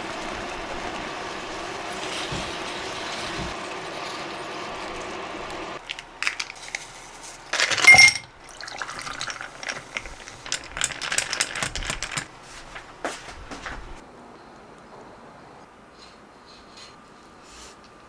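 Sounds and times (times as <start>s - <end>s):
dishes and utensils clinking: 7.5s - 12.7s.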